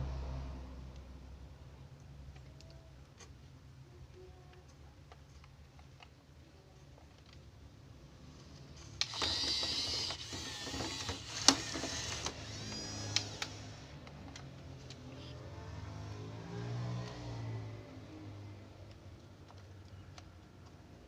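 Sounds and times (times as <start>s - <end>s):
toy motors whirring: 8.8s - 14.3s.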